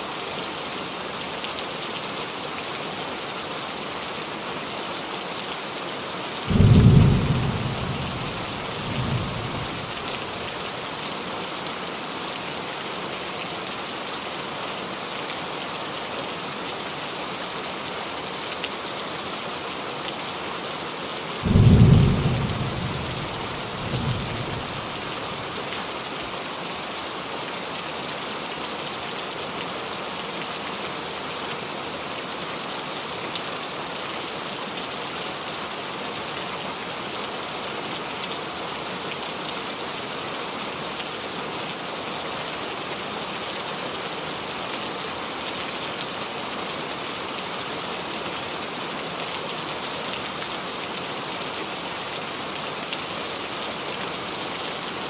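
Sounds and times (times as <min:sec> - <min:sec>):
heavy rain drumming on a roof: 0:00.0 - 0:55.0
thunder rumble: 0:06.5 - 0:09.7, 0:21.5 - 0:24.8.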